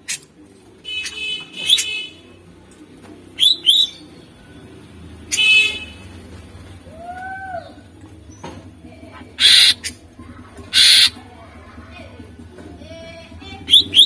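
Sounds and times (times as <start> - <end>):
bird singing buzzy chatters: 9.2 - 11.3, 13.4 - 14.0
bird low arching whistles: 13.7 - 14.0.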